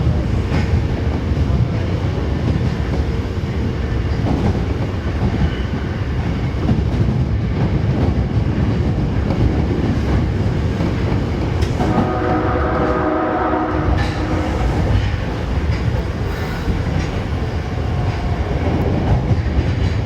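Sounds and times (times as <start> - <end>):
subway train rumbling: 0.0 - 20.0
faint rail-joint clicks: 10.8 - 11.9.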